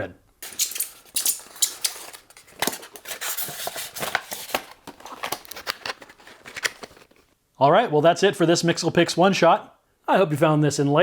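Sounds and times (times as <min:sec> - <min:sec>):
packaging rustling and crinkling: 0:00.4 - 0:07.4.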